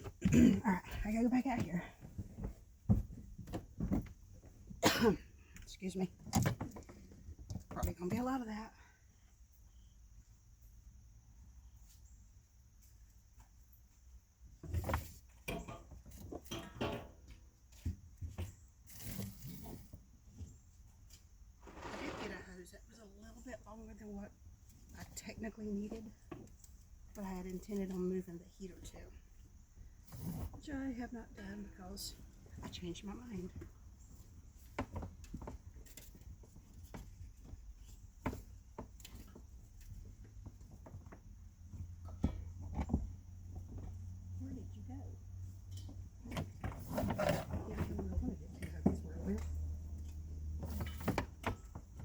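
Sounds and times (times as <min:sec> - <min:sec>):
parts being handled: 0:14.6 - 0:17.8
scraping rustle: 0:18.4 - 0:22.7, 0:46.2 - 0:52.0.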